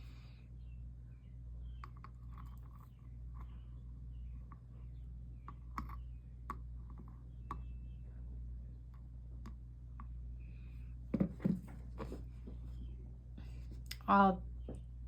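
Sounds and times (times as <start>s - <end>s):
steady low hum: 0.0s - 15.0s
heavy thumps: 11.1s - 12.6s.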